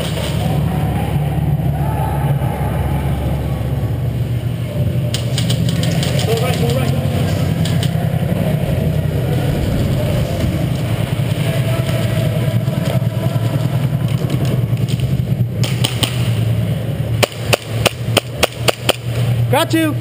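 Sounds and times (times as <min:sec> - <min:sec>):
low rumble: 0:00.8 - 0:15.6
airsoft guns firing: 0:17.2 - 0:19.2.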